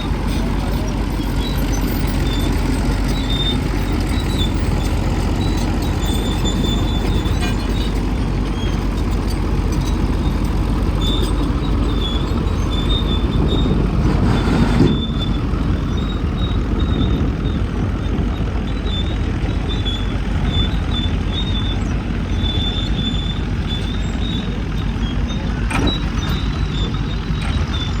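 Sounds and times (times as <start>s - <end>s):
faint high squeak: 0.0s - 8.8s, 18.7s - 28.0s
excavator engine running: 0.0s - 28.0s.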